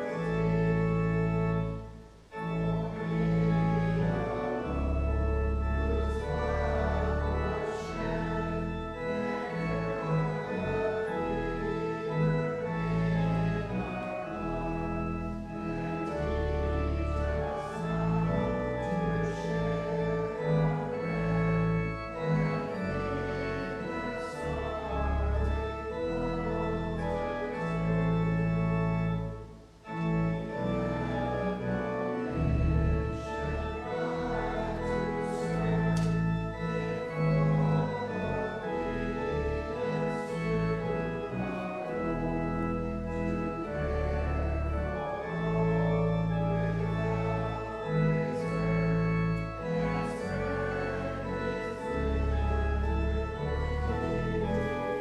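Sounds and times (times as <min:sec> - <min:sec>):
church organ playing chords: 0:00.0 - 0:55.0.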